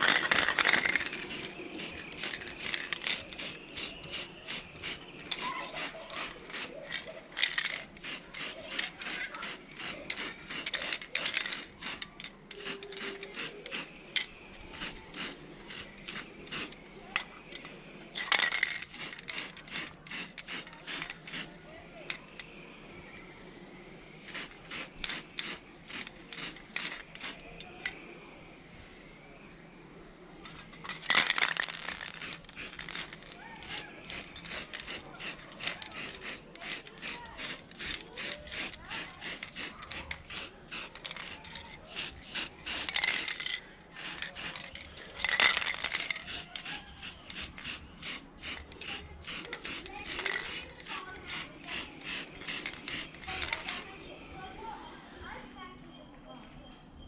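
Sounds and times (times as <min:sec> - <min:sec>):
tools scraping metal: 0:30.9 - 0:53.9.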